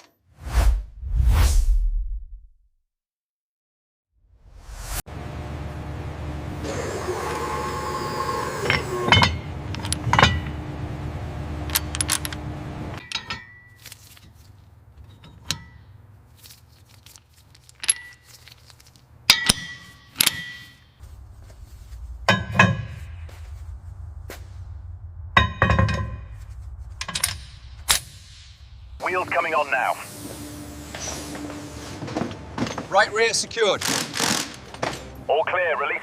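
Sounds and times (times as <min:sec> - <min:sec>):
steady hum: 0:04.8 - 0:13.0, 0:21.0 - 0:32.7
metal tools clinking: 0:11.7 - 0:12.4, 0:13.0 - 0:21.0.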